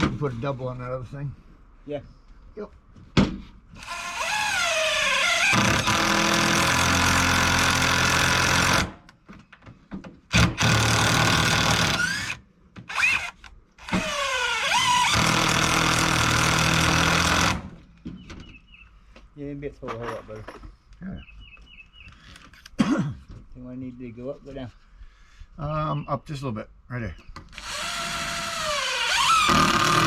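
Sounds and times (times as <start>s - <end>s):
power drill driving screws into wood: 3.7s - 9.1s, 10.3s - 17.8s, 27.5s - 30.0s.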